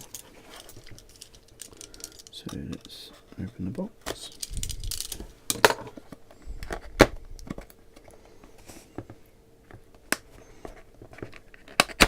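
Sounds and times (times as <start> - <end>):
packaging rustling and scraping: 0.0 - 9.0.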